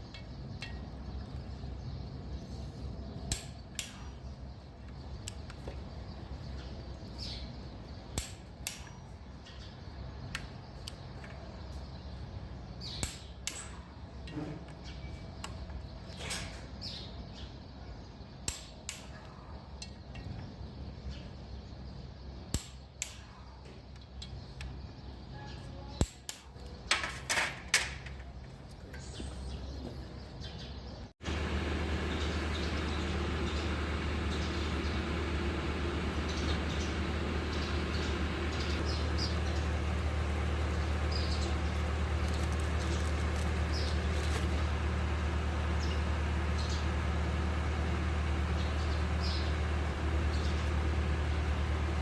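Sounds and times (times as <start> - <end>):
steady low hum: 28.1 - 52.0.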